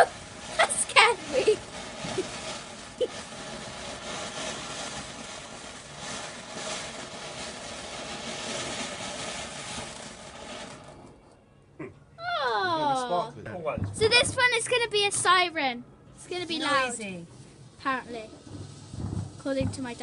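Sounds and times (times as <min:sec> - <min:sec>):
firework fountain hissing: 0:00.0 - 0:11.3, 0:16.2 - 0:20.0.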